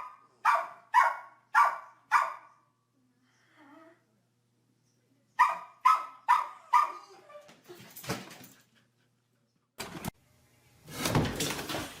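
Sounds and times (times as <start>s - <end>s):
dog barking: 0.0s - 2.6s, 5.4s - 7.1s.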